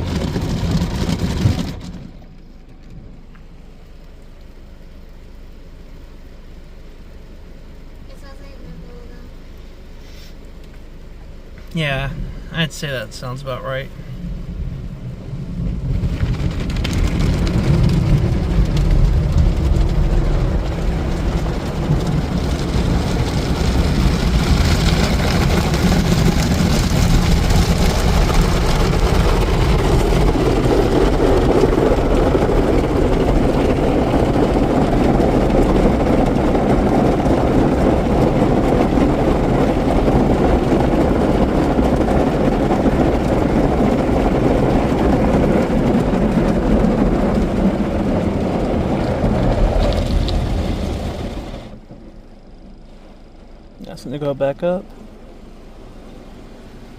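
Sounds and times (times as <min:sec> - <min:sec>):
car wash rushing noise: 0:00.0 - 0:56.9.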